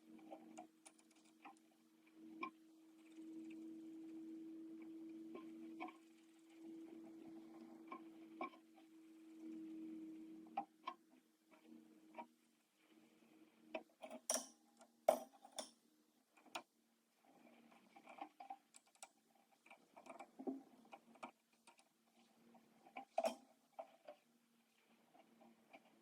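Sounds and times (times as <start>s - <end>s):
faint steady hum: 0.0s - 26.0s.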